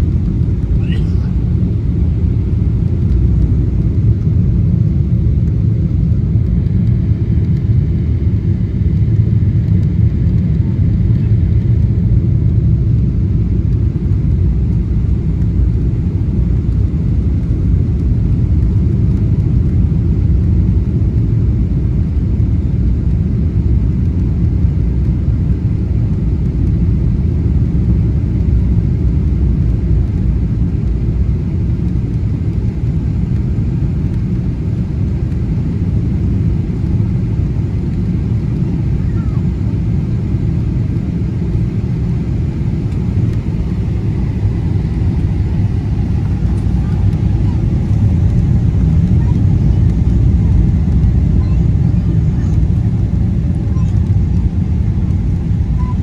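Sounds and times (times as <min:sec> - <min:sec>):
airliner cabin rumble: 0:00.0 - 0:56.0.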